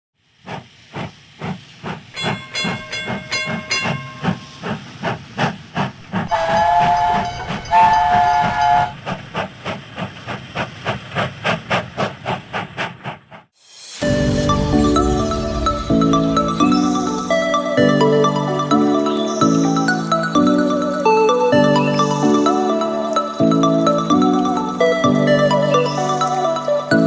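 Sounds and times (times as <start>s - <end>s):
steam locomotive chuffing: 0.3s - 18.2s
steam locomotive whistle: 6.2s - 9.2s.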